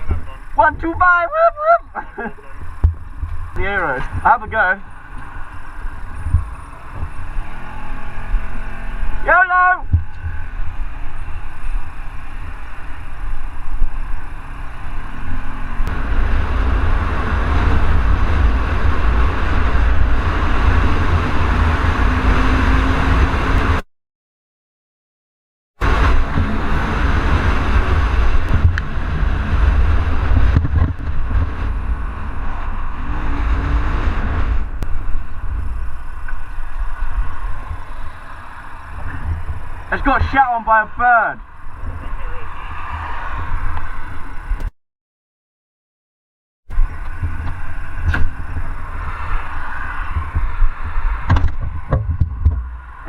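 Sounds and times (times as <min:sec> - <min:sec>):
wind buffeting microphone: 0:01.6 - 0:09.2, 0:25.8 - 0:40.4, 0:46.7 - 0:53.0
motorcycle engine: 0:01.9 - 0:23.8, 0:25.8 - 0:40.0.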